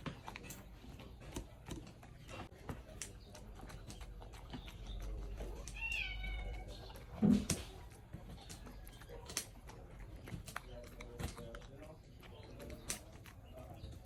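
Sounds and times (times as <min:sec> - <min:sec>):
cat meowing: 0:05.6 - 0:07.0.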